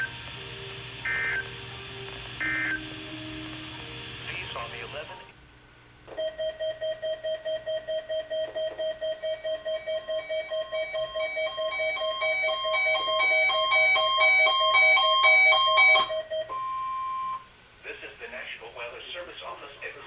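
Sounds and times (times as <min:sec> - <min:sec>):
steady mid-pitched beeping: 0:00.0 - 0:00.2.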